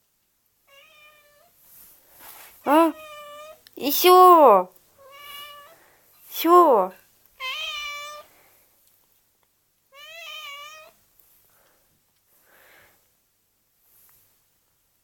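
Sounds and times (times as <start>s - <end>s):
faint soft sounds: 0.0s - 15.0s
cat meowing: 0.7s - 1.5s, 2.7s - 3.6s, 5.0s - 5.8s, 7.4s - 8.3s, 9.9s - 11.0s.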